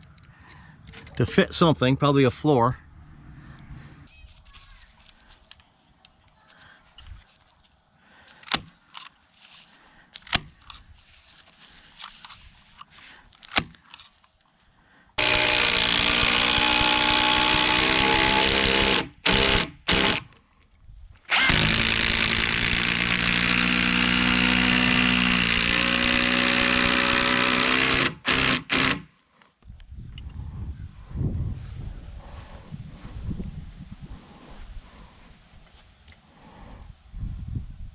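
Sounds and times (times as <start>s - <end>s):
power drill driving screws: 15.2s - 20.3s, 21.3s - 29.1s.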